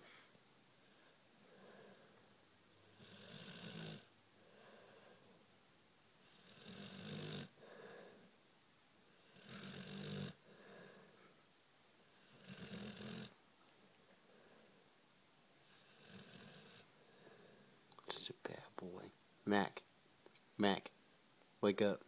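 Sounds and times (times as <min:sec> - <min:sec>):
dog snoring: 0:02.8 - 0:05.2, 0:06.2 - 0:07.6, 0:09.1 - 0:10.4, 0:12.2 - 0:13.4, 0:15.6 - 0:16.9.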